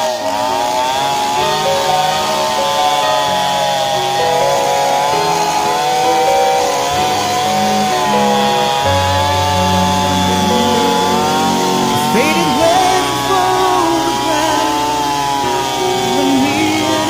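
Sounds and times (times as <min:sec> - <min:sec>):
chainsaw cutting wood: 0:00.0 - 0:17.0.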